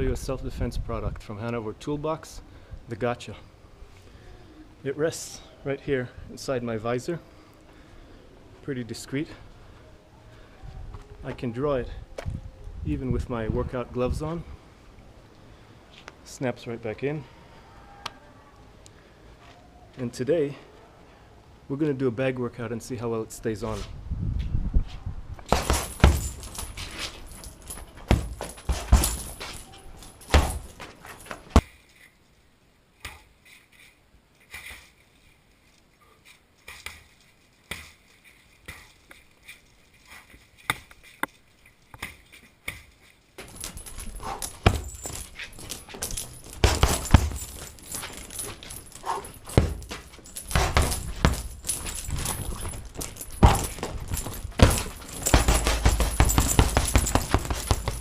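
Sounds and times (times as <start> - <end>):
gloved strikes on punching bag: 25.5 - 26.6, 28.1 - 29.4, 30.2 - 30.8, 43.4 - 45.3, 46.5 - 48.3, 49.0 - 58.0
metallic jingling: 25.5 - 32.2, 36.4 - 58.0.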